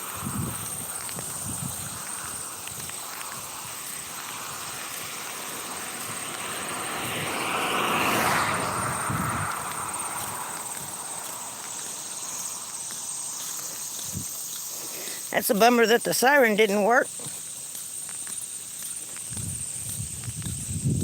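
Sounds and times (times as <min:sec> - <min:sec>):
vehicle passing: 0:00.0 - 0:14.0.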